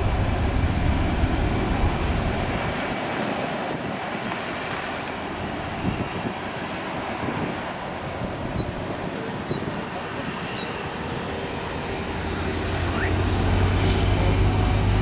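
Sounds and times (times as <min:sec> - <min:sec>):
low engine hum: 0:00.0 - 0:03.0, 0:11.1 - 0:15.0
wind rushing across microphone: 0:00.0 - 0:15.0.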